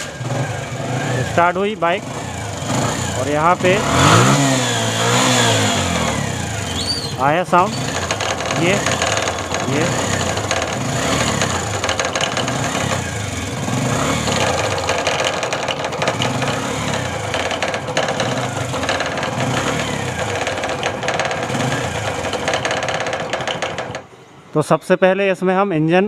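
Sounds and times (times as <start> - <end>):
motorcycle engine knocking clatter: 0.0 - 24.1.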